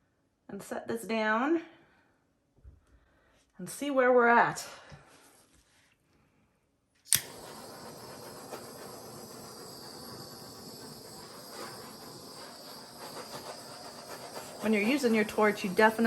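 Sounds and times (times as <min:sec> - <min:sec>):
torch flame hissing: 0:07.1 - 0:16.0
torch igniter click: 0:07.1 - 0:16.0.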